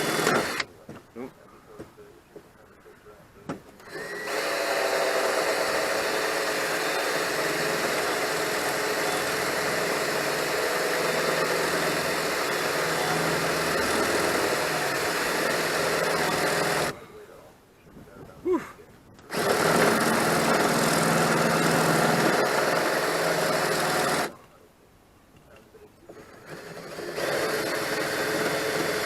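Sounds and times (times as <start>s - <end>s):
electric drill drilling steel: 0.0s - 0.7s, 3.8s - 17.0s, 19.3s - 24.4s, 26.1s - 29.0s.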